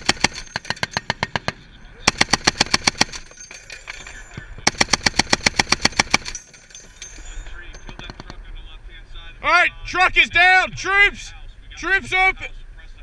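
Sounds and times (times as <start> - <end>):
machine gun firing bursts: 0.0 - 3.5, 4.6 - 6.6.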